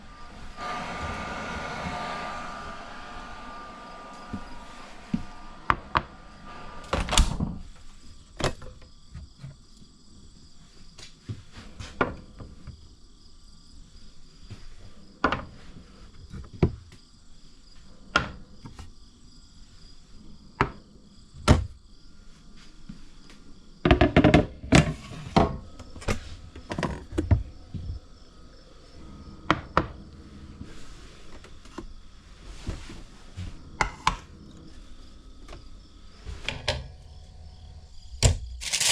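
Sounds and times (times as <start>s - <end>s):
faint steady high tone: 0.0s - 8.4s
utensils clattering: 38.6s - 38.9s.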